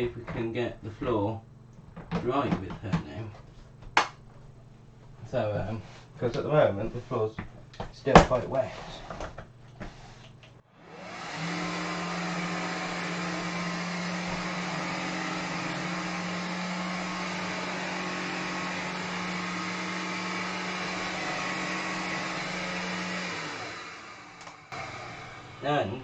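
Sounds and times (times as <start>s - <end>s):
floor cleaner motor humming: 9.1s - 26.0s.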